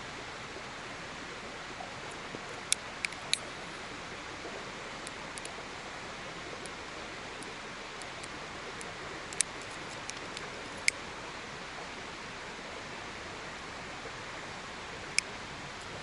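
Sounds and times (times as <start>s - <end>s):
outdoor background hiss: 0.0s - 16.0s
sharp clicks: 9.3s - 11.0s.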